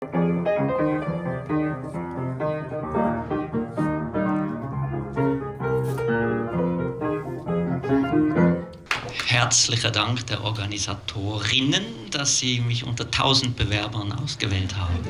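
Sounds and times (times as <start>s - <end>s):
solo piano playing: 0.0s - 9.0s.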